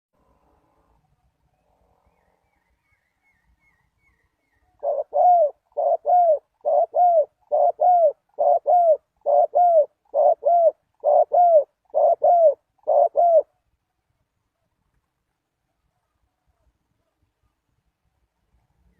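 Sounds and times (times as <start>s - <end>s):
dove cooing: 4.7s - 13.6s.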